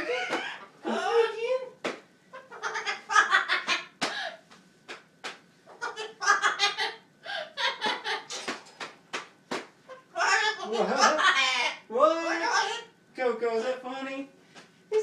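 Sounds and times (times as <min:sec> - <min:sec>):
parrot mimicking laughter: 0:00.0 - 0:01.4, 0:02.4 - 0:04.4, 0:05.7 - 0:08.4, 0:09.9 - 0:12.9.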